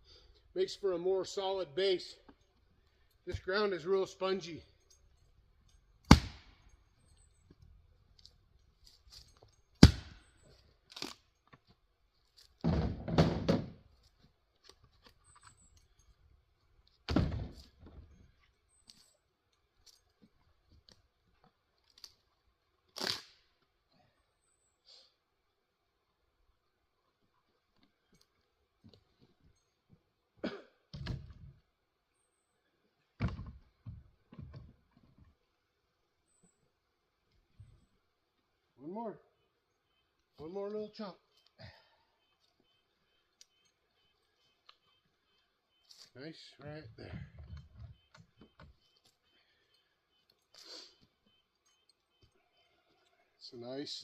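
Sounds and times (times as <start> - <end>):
axe splitting firewood: 6.0 - 6.6, 9.7 - 10.3
heavy wood thuds: 12.6 - 13.8, 17.1 - 18.0
knocking and clatter of wood: 12.6 - 13.9, 17.0 - 18.4, 30.9 - 31.6, 33.2 - 35.4.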